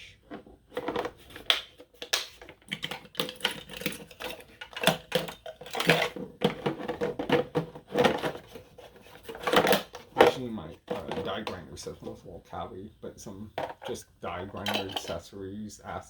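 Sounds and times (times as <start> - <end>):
metal tools clinking in drawer: 2.7 - 8.4, 14.6 - 15.2.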